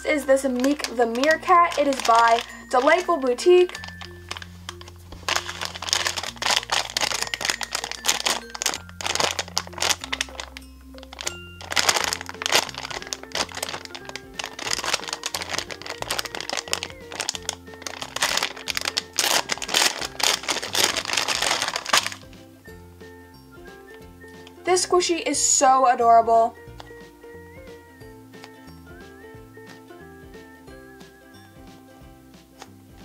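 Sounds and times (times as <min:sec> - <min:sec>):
plastic wrapping crinkling: 0:00.0 - 0:22.4
background music with bass line: 0:21.8 - 0:25.0, 0:26.0 - 0:33.0.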